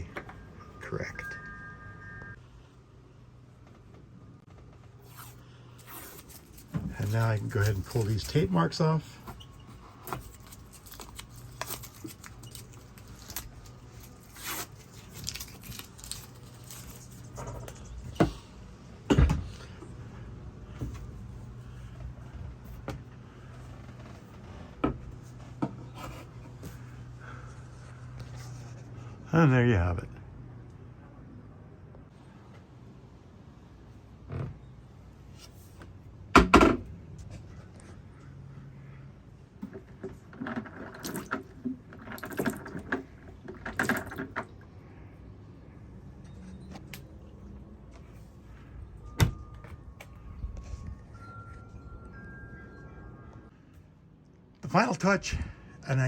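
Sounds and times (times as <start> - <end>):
low hum: 0.0 - 5.7.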